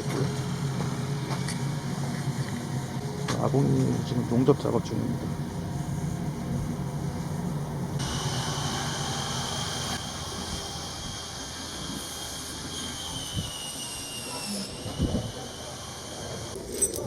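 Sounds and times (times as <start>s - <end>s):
high metallic power tool whine: 8.0s - 17.0s.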